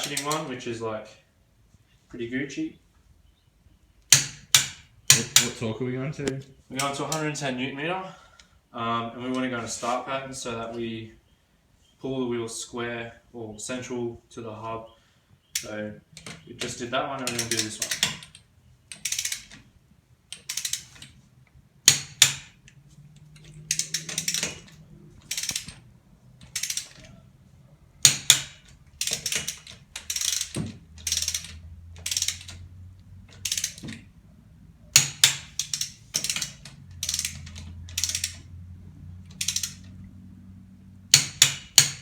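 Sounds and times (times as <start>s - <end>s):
torque wrench ratcheting clicks: 17.2s - 19.6s, 20.3s - 21.1s, 23.2s - 25.8s, 26.4s - 27.1s, 28.0s - 32.6s, 33.3s - 33.9s, 35.0s - 38.5s, 39.3s - 39.9s.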